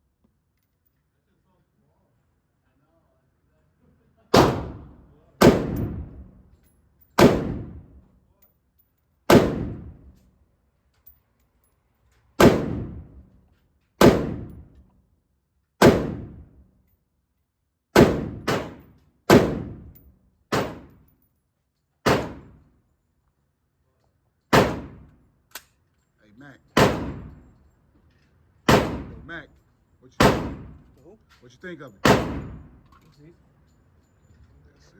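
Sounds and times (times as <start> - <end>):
handgun shots echoing: 4.4 - 6.1, 7.2 - 7.8, 9.3 - 10.0, 12.4 - 13.0, 14.0 - 14.8, 15.8 - 16.4, 18.0 - 21.0, 22.1 - 22.6, 24.5 - 25.7, 26.8 - 27.4, 28.7 - 29.2, 30.2 - 30.8, 32.0 - 32.6.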